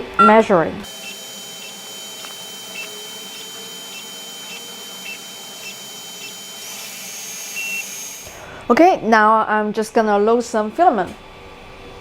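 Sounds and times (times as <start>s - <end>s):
stepper motors whining: 0.8s - 8.5s.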